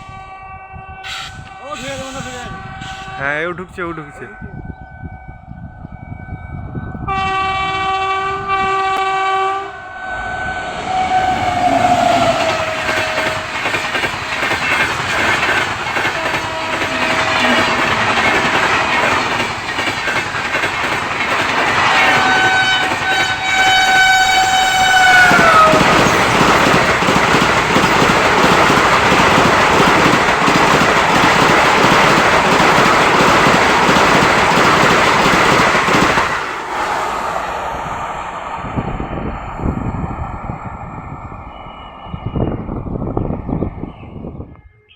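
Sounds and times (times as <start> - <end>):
train horn: 0.0 - 13.6, 16.0 - 19.0, 21.8 - 26.2
train rumble and wheel clatter: 0.0 - 44.9.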